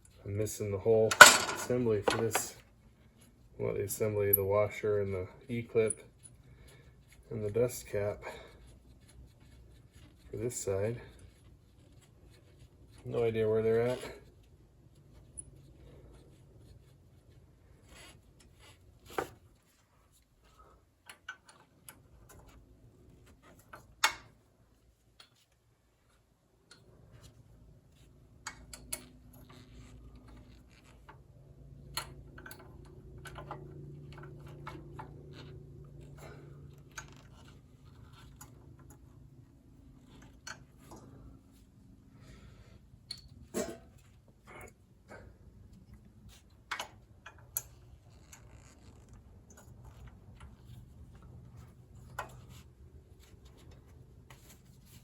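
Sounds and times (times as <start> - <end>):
clinks of hand tools: 1.1 - 2.6.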